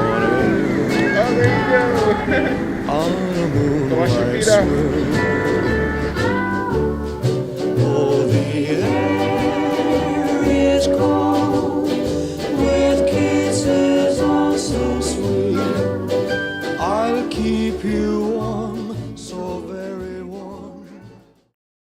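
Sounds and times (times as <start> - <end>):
steady bass beat: 0.0 - 8.0
song with vocal harmonies: 0.0 - 21.4.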